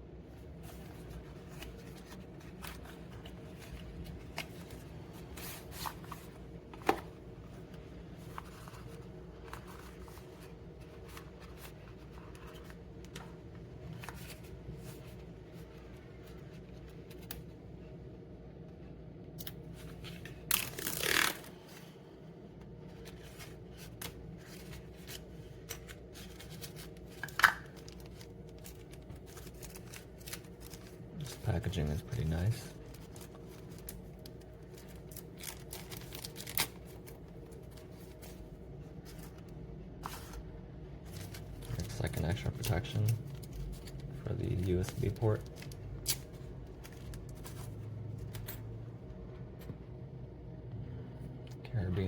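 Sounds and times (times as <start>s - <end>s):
packaging tearing: 20.5s - 21.5s, 35.0s - 37.1s
packaging rustling: 22.8s - 47.8s.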